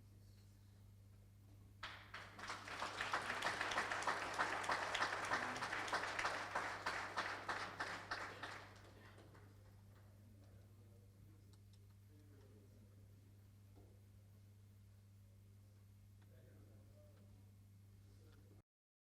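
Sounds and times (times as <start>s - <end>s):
audience applauding: 1.8s - 9.7s.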